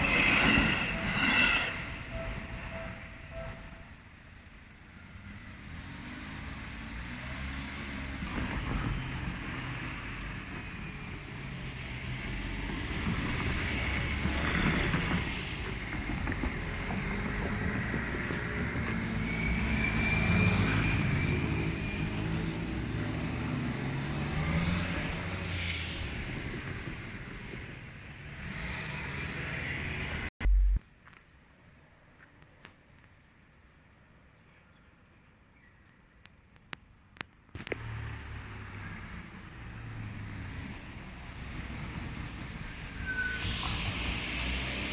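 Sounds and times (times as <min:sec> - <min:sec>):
wheels squealing on rails: 0:00.0 - 0:04.2, 0:04.9 - 0:30.3, 0:38.5 - 0:44.9
train rumbling: 0:00.0 - 0:30.8
loud thump: 0:30.4 - 0:30.8.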